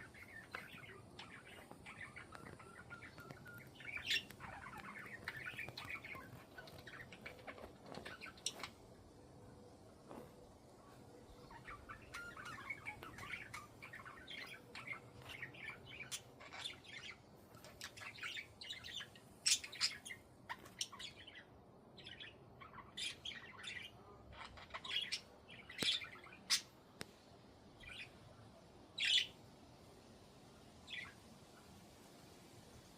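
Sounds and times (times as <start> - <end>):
budgerigars chirping: 0.0 - 8.8, 11.5 - 21.4.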